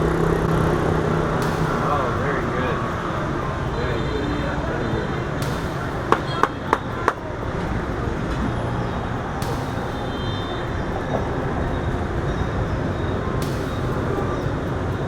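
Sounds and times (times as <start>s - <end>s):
street traffic: 0.0s - 15.0s.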